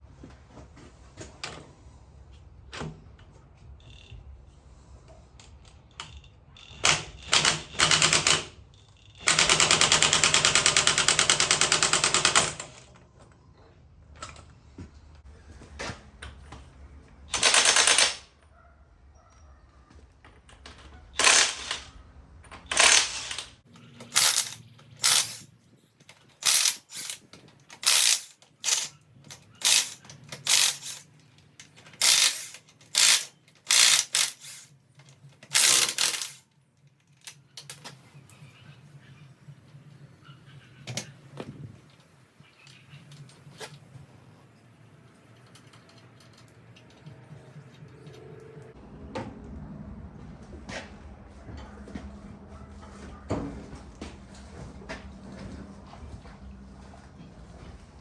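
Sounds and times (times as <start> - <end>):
impact wrench hammering bolts: 22.7 - 25.4, 26.3 - 31.1, 31.7 - 34.7, 35.5 - 36.4.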